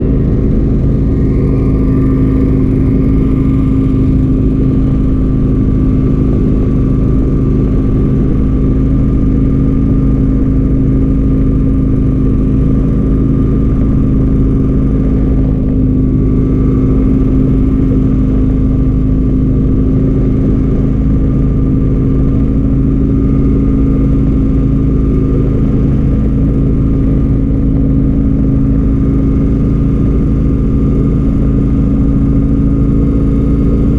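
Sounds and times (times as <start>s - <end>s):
engine running steadily: 0.0s - 33.9s.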